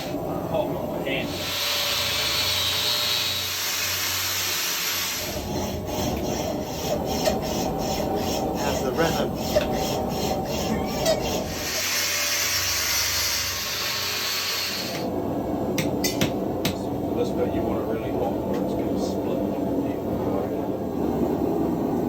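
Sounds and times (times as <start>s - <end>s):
hand tool rasping metal: 5.2s - 13.3s.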